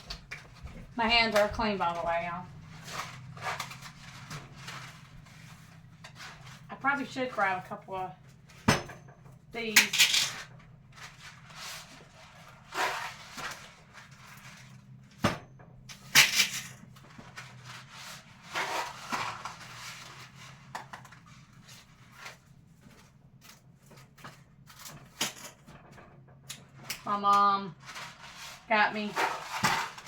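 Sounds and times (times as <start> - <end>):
packets rustling and crinkling: 0.1 - 6.9, 27.0 - 30.0.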